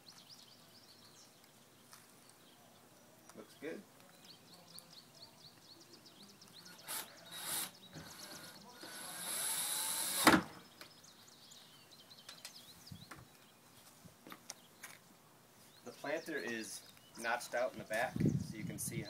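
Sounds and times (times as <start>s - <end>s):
cordless drill driving screw: 6.7s - 10.4s.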